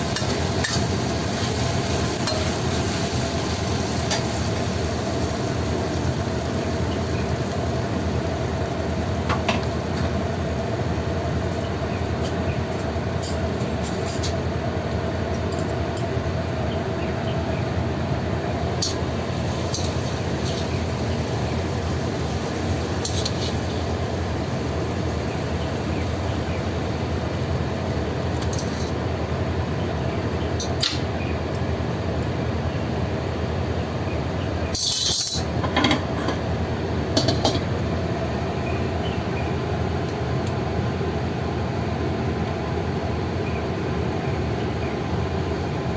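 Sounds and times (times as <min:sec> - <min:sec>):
noodles sizzling in a pan: 0:00.0 - 0:31.8.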